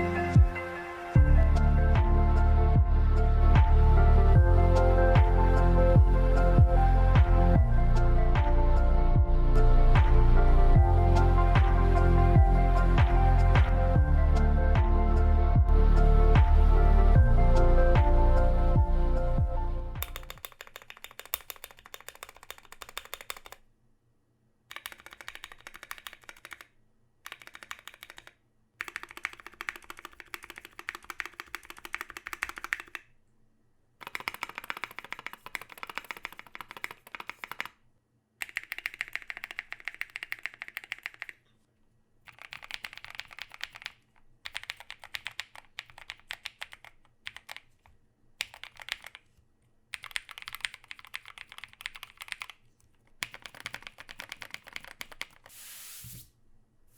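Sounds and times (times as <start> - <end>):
mechanical keyboard typing: 20.0 - 23.6, 24.7 - 26.7, 27.3 - 33.1, 34.0 - 37.8, 38.4 - 41.4, 42.3 - 49.3, 49.9 - 55.5.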